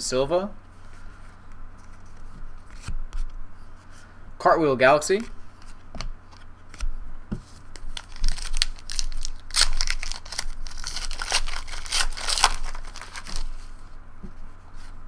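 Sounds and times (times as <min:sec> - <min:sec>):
wrapper crinkling and tearing: 0:07.8 - 0:13.8.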